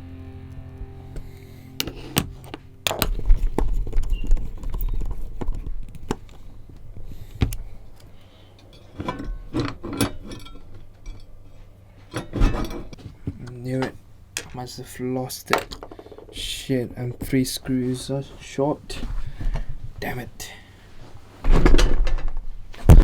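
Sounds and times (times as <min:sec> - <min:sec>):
plastic parts clicking and knocking: 0:01.8 - 0:11.3, 0:15.5 - 0:16.5.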